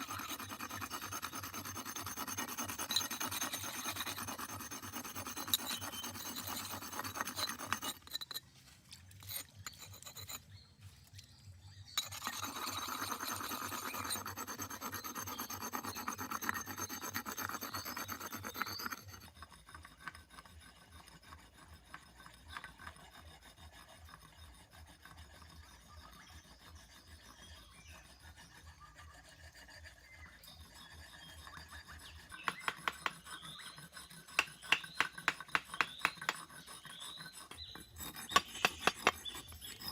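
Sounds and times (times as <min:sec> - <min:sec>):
hard scraping and rubbing: 0:00.0 - 0:10.6, 0:12.0 - 0:23.3, 0:32.0 - 0:39.9.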